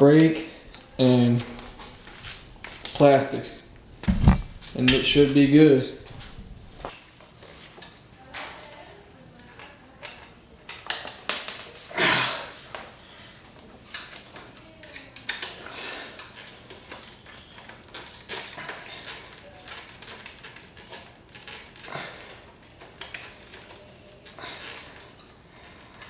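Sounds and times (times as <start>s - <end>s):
sharp knocks: 0.7s - 6.9s.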